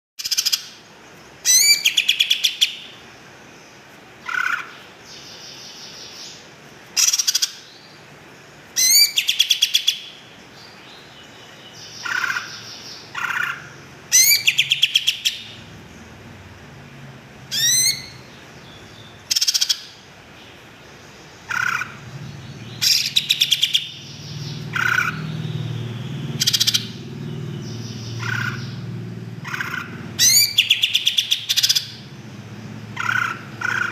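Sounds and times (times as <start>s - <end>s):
bird trills and whistles: 1.4s - 2.8s, 8.8s - 10.1s, 13.2s - 15.5s, 17.5s - 18.2s, 22.8s - 25.4s, 29.5s - 32.0s.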